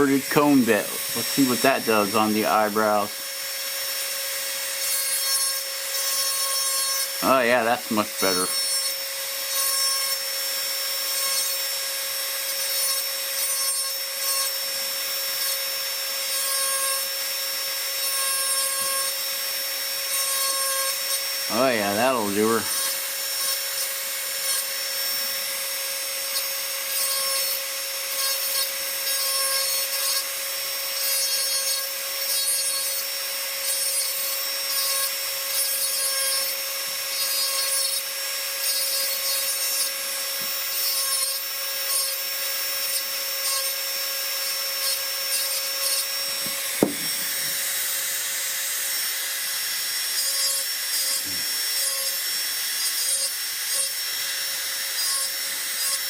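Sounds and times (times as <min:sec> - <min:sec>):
burr grinding wood: 0:00.0 - 0:03.2, 0:04.7 - 0:08.8, 0:21.3 - 0:24.4, 0:45.4 - 0:48.0
rotary tool whining: 0:00.0 - 0:56.0.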